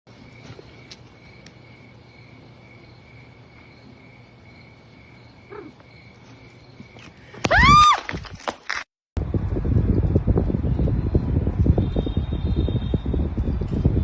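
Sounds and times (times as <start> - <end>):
cricket chirping: 0.1 - 7.4.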